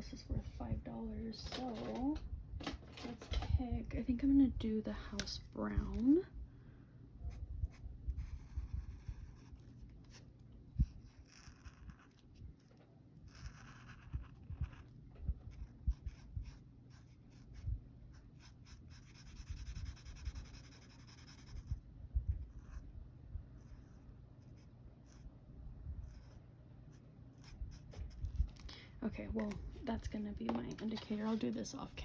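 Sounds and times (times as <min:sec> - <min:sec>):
pencil scribbling on paper: 0:08.2 - 0:09.8, 0:15.5 - 0:21.8.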